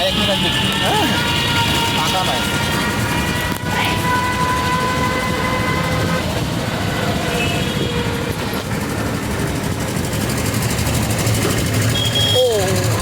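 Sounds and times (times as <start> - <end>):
vehicle horn: 0.0 - 8.5, 11.9 - 12.6
passing road traffic: 0.0 - 13.0.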